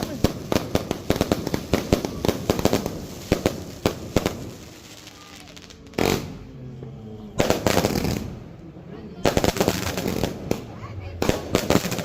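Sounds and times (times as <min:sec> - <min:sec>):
firework cake firing shots: 0:00.0 - 0:06.5, 0:07.4 - 0:08.4, 0:09.2 - 0:12.0
loud firework blast: 0:00.0 - 0:06.6, 0:07.3 - 0:08.6, 0:09.2 - 0:12.0.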